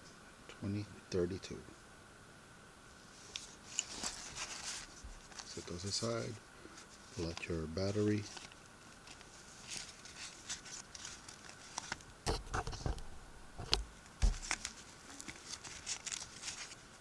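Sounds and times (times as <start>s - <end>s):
hands rustling packaging: 3.2s - 17.0s
heavier knocks: 12.3s - 14.5s.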